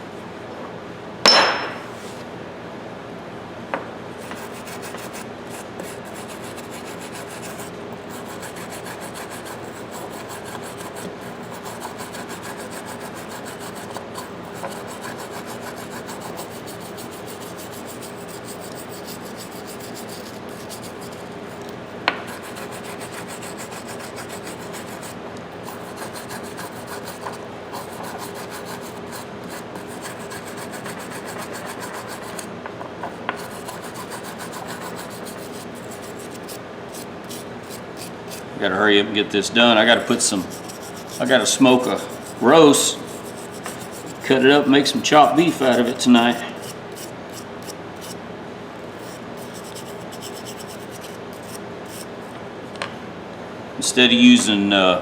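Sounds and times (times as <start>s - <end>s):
sharp tap on metal: 1.3s - 1.8s
scratchy rubbing on metal wrench: 4.2s - 21.7s, 22.3s - 32.5s, 33.3s - 38.4s, 39.9s - 48.2s, 48.8s - 52.4s.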